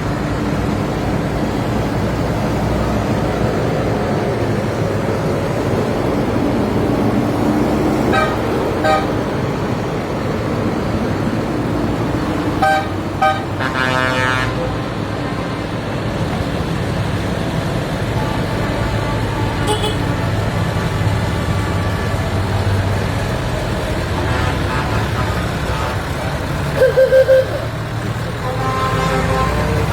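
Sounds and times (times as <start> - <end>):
tractor engines running: 0.0 - 29.9
horn toots: 8.1 - 9.2, 12.6 - 14.8, 19.6 - 20.1, 26.8 - 27.7, 28.4 - 29.9.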